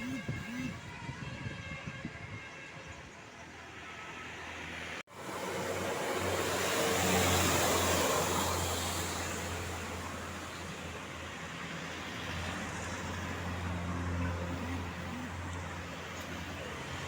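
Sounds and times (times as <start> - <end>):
vehicle engine hum: 0.0 - 1.1, 4.5 - 17.0
tyre and road noise: 0.0 - 2.0, 3.6 - 17.0.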